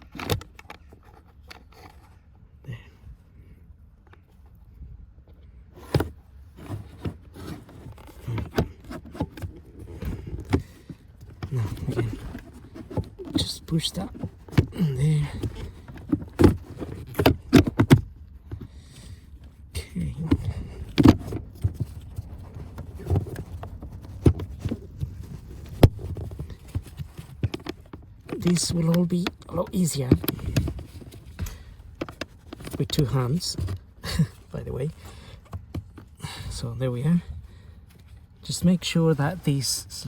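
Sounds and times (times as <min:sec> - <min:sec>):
plastic parts rubbing and scraping: 0:00.0 - 0:02.4, 0:05.7 - 0:40.0
plastic clicks and knocks: 0:20.3 - 0:22.0.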